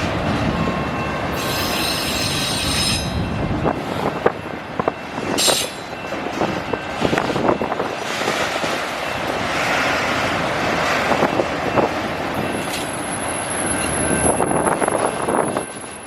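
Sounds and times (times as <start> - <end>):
freight train wheels rumbling: 0.0 - 16.0
high-pitched wheel squeal: 1.3 - 3.2.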